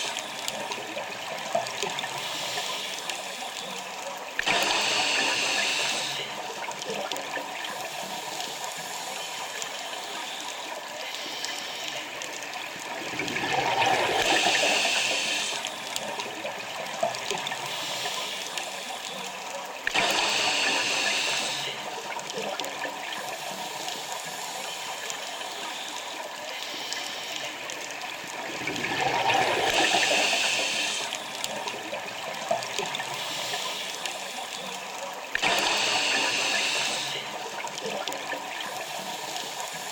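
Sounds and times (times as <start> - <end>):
rush of exhaled bubbles: 12.8 - 17.2, 28.2 - 33.2
regulator inhalation hiss: 20.1 - 21.8, 29.7 - 31.2, 35.6 - 37.2.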